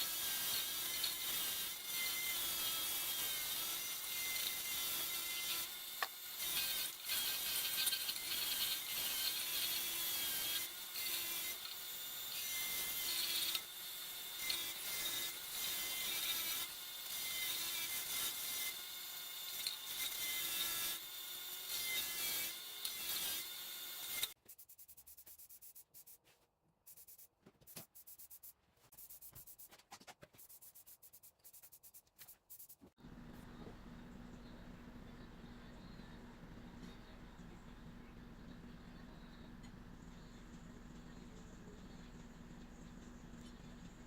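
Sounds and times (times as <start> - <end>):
small motorized tool whining: 0.0 - 24.4.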